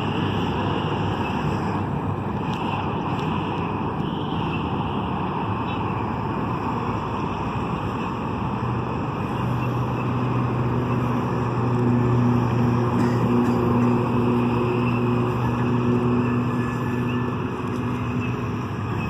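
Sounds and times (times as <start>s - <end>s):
boat rushing on water: 0.0s - 19.0s
low motor hum: 6.4s - 19.0s.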